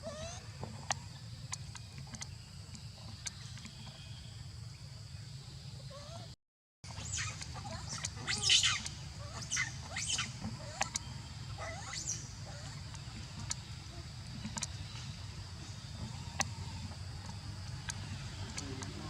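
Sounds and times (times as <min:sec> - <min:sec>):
bird chirping: 0:06.9 - 0:19.0
steady low hum: 0:06.9 - 0:19.0.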